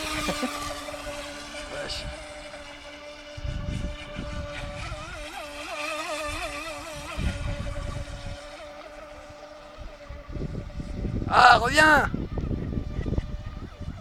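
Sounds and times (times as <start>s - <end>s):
small electric motor whining: 0.0s - 14.0s.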